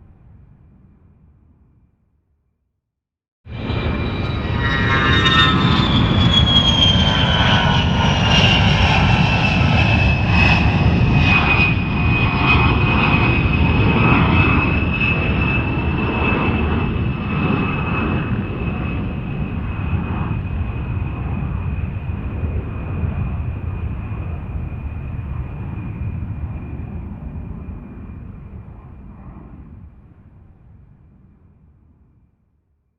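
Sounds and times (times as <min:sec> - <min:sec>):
low rumble: 0:00.0 - 0:02.2
jet engine whine: 0:03.5 - 0:31.7.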